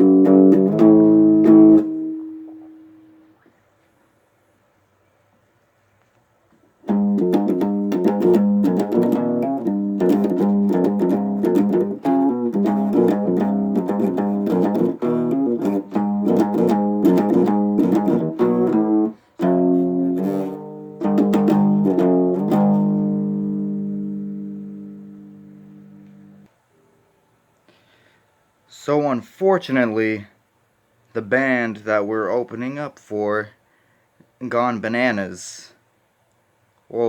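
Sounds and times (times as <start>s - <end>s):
guitar picking and strumming: 0.0s - 3.4s, 6.8s - 26.5s.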